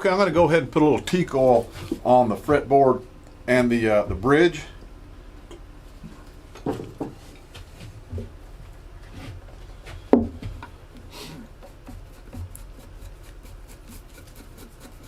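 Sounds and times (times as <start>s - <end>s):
rubbing on wood: 11.2s - 15.0s.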